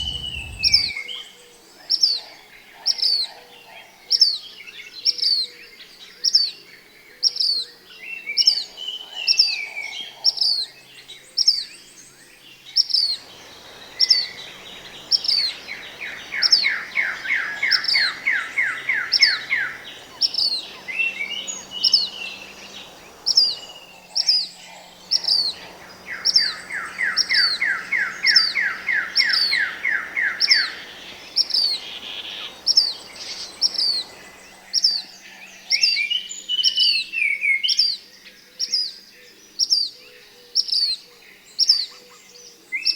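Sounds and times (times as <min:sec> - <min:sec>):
bird high falling chirp: 0:00.0 - 0:00.9
bird rapid trill: 0:00.0 - 0:00.9, 0:13.2 - 0:34.6.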